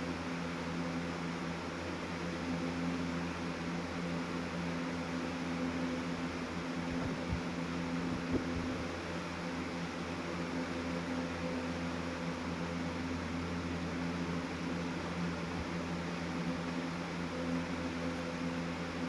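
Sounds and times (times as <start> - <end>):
fan motor hum: 0.0 - 19.0
fan air rushing: 6.3 - 10.6.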